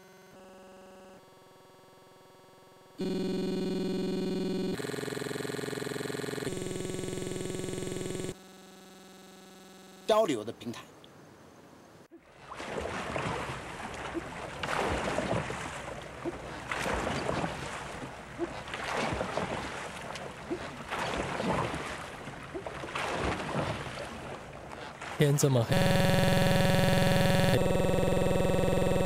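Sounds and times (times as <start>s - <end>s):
water splashing around rowed boat: 12.2s - 25.4s.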